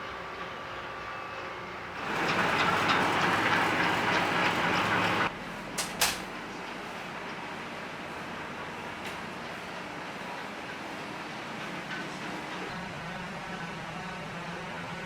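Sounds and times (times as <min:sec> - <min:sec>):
train rushing past: 0:00.0 - 0:05.3.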